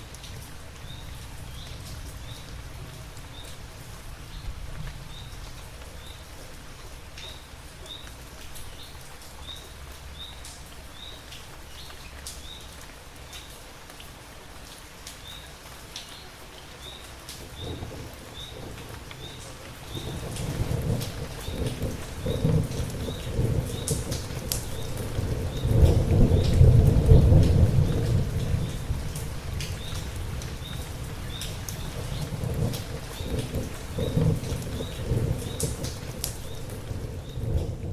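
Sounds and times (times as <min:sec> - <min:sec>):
steady rain: 0:00.0 - 0:37.9
low thunder rumble: 0:17.4 - 0:37.9
sharp drip ticks: 0:18.4 - 0:37.9.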